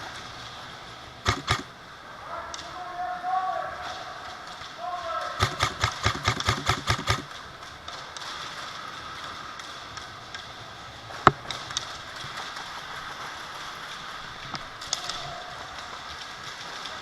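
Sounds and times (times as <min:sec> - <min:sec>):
background hiss: 0:00.0 - 0:17.0
airsoft gun shot: 0:01.2 - 0:01.8, 0:05.4 - 0:07.4
faint pops and clicks: 0:01.3 - 0:01.7, 0:05.4 - 0:08.3.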